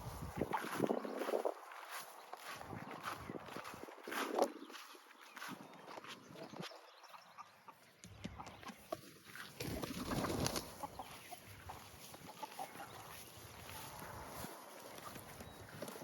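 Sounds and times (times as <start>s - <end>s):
chickens clucking: 0.0s - 16.0s.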